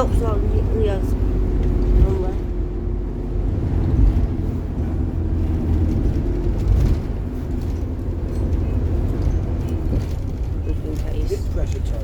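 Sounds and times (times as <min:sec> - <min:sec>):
bus engine and road rumble: 0:00.0 - 0:12.0.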